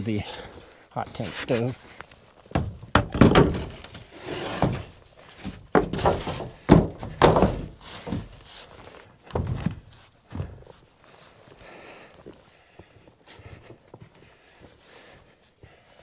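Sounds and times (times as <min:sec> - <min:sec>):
wooden panels knocking: 0:02.6 - 0:08.4.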